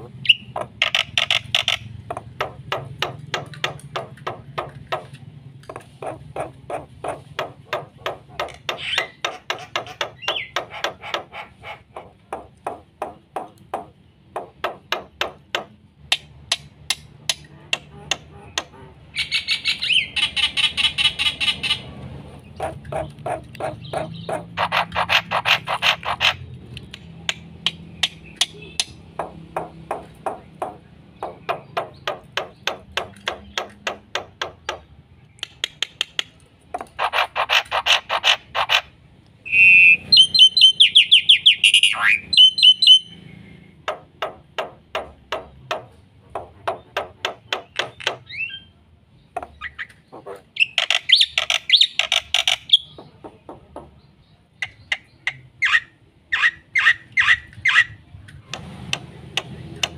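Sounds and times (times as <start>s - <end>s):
bird whistled squeaky notes: 39.5s - 43.2s.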